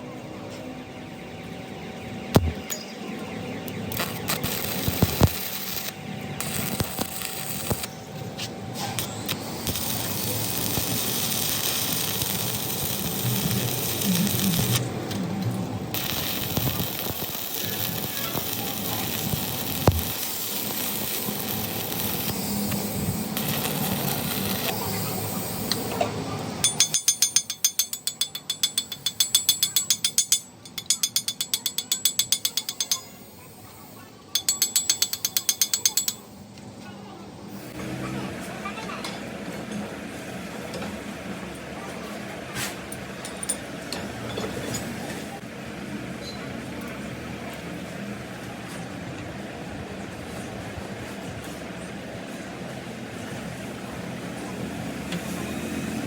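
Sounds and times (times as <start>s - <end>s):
workshop noise: 0.0s - 56.0s
ratchet wrench clicking: 26.6s - 33.2s, 34.4s - 36.3s.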